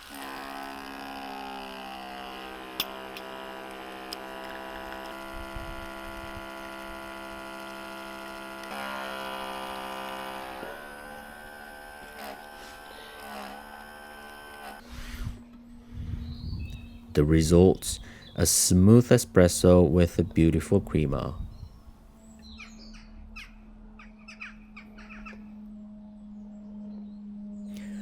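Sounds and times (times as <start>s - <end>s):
espresso machine pump humming: 0.0s - 15.2s.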